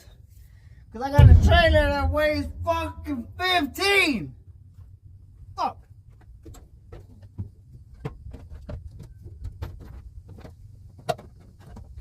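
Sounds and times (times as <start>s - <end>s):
low rumble: 1.2s - 4.0s.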